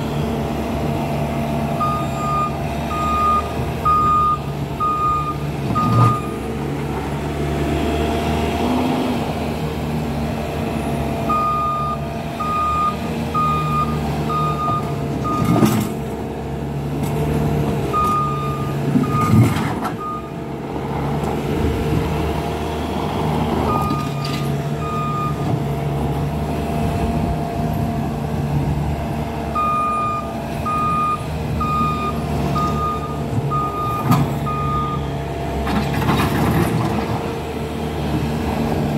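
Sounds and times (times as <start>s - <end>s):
diesel engine running: 0.0s - 38.9s
reversing alarm beeping: 1.8s - 6.5s, 11.3s - 15.6s, 17.9s - 20.3s, 23.7s - 25.4s, 29.6s - 35.2s.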